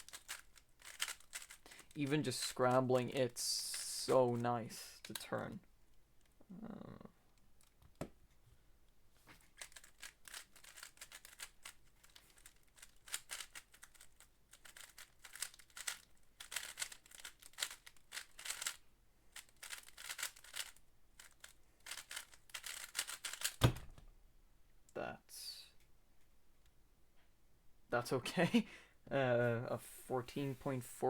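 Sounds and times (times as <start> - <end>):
speedcube clacking turns: 0.0 - 4.4, 9.4 - 23.8.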